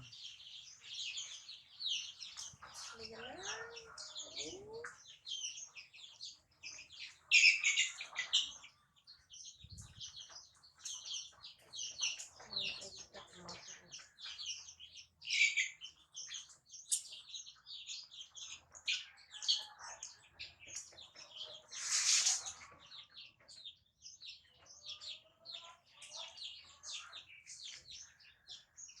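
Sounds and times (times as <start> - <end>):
small birds chirping: 0.0 - 29.0
brief hissing rustle: 21.7 - 22.6.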